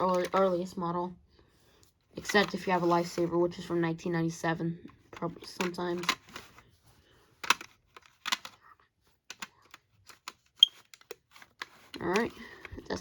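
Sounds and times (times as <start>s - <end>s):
plastic clicks and taps: 4.9s - 6.6s, 7.4s - 8.6s, 9.3s - 13.0s.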